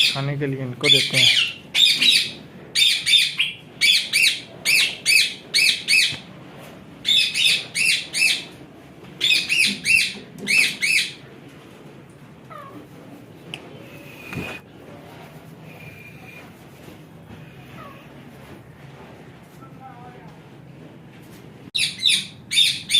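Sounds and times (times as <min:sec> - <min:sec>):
parrot screeching: 0:00.9 - 0:06.2, 0:07.0 - 0:08.5, 0:09.2 - 0:11.2, 0:21.8 - 0:22.9.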